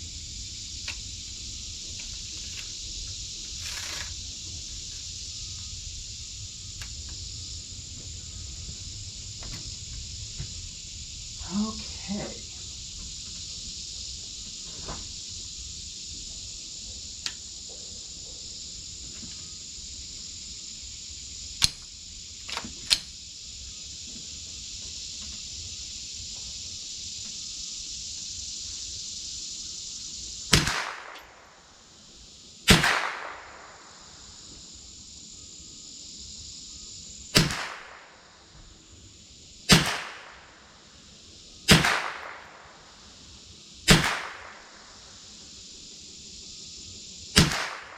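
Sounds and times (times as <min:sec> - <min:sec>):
rifle shots with echo: 0:30.5 - 0:31.3, 0:32.7 - 0:33.8, 0:37.4 - 0:38.2, 0:39.7 - 0:40.5, 0:41.7 - 0:42.7, 0:43.9 - 0:44.8, 0:47.4 - 0:47.9.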